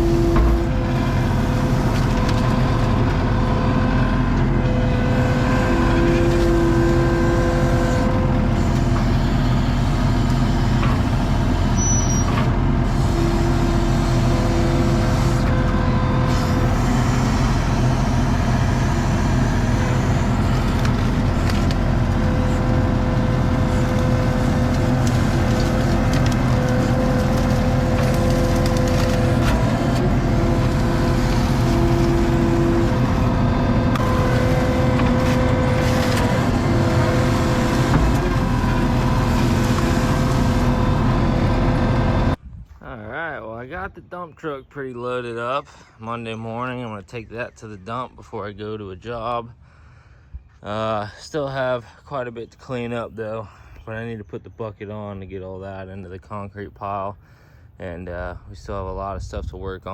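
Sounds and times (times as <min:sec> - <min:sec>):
diesel engine running: 0:00.0 - 0:42.4.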